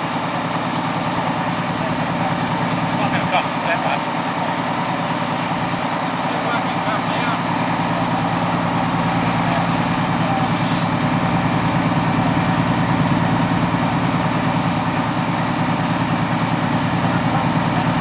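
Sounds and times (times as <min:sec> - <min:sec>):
diesel engine idling: 0:00.0 - 0:18.0
short hiss: 0:09.6 - 0:11.0.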